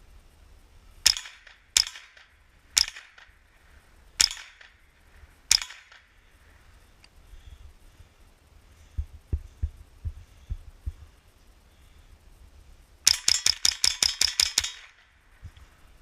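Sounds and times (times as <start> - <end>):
rifle shots: 1.0 - 3.4, 4.2 - 4.8, 5.5 - 6.1.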